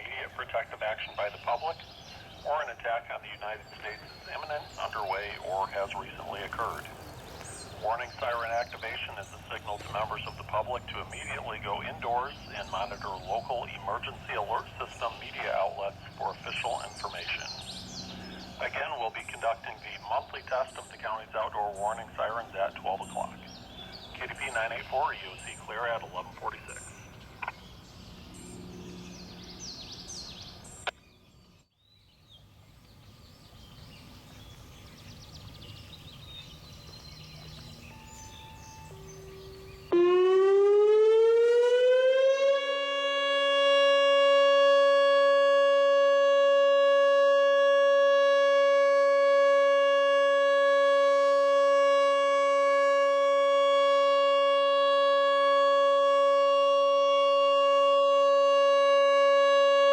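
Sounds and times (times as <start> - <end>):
electronic warning siren: 0.0 - 29.1, 36.9 - 59.9
low background noise: 0.0 - 40.1.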